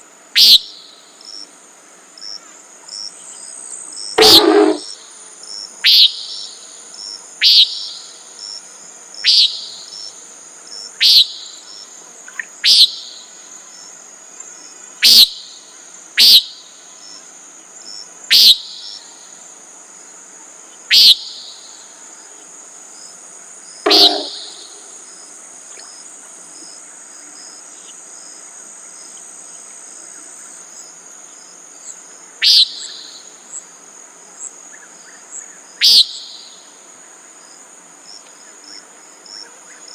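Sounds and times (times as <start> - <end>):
high insect trill: 0.0 - 39.9
nighthawk nasal peent call: 0.4 - 0.7, 4.2 - 4.9, 5.8 - 6.4, 7.4 - 8.0, 9.2 - 9.7, 11.0 - 11.4, 20.9 - 21.2, 23.8 - 24.9, 32.4 - 33.1, 35.8 - 36.2.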